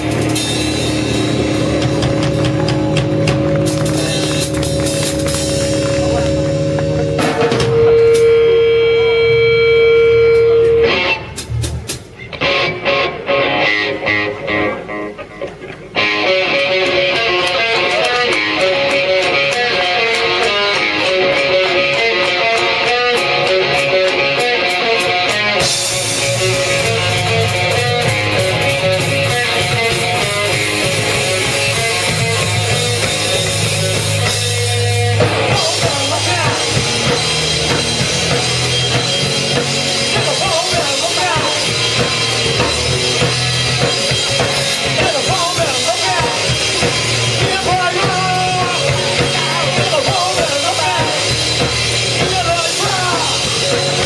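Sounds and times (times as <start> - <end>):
bass guitar: 0.0 - 54.0
drums: 0.0 - 54.0
electric guitar: 0.0 - 54.0.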